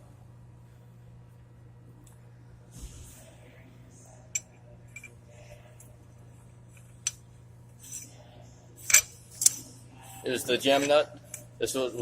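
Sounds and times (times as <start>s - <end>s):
metallic clinks of steel parts: 8.8s - 9.7s.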